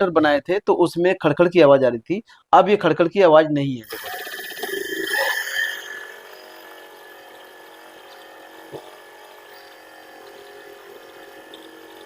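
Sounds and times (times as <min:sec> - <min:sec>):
electric motor whining: 0:03.9 - 0:12.0.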